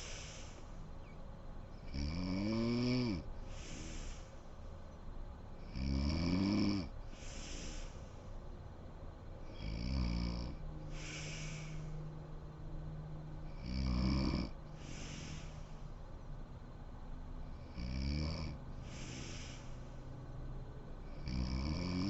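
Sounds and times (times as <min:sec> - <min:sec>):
woman snoring: 0:01.9 - 0:04.2, 0:05.7 - 0:07.9, 0:09.5 - 0:11.9, 0:13.5 - 0:15.6, 0:17.6 - 0:19.7, 0:21.1 - 0:22.0.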